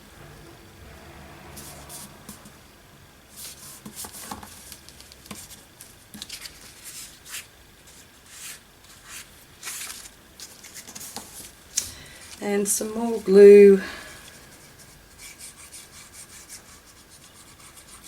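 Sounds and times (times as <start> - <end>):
paper rustling and crinkling: 3.4 - 11.6.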